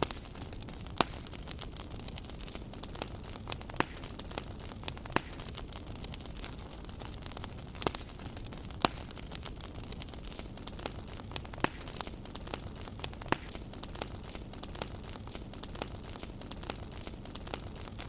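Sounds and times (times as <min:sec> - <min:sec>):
campfire crackling and popping: 0:00.0 - 0:18.0.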